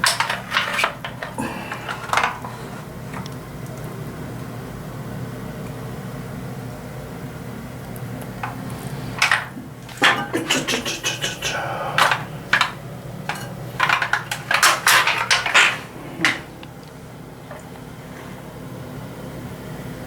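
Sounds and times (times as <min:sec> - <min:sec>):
metallic scraping and clattering: 0:00.0 - 0:02.4, 0:09.2 - 0:16.6
steady low hum: 0:00.0 - 0:20.0.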